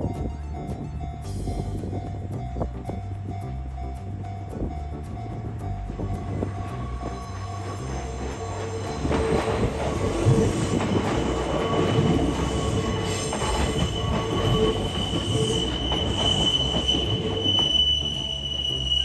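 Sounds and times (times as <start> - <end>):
train cars rumbling and clattering: 0.0 - 19.0
train wheels squealing: 6.1 - 19.0.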